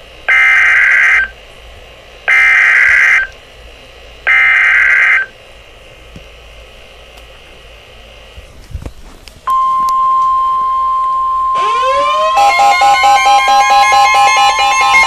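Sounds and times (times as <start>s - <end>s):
digital data noise bursts: 0.3s - 1.4s, 2.3s - 3.3s, 4.3s - 5.3s, 11.6s - 15.0s.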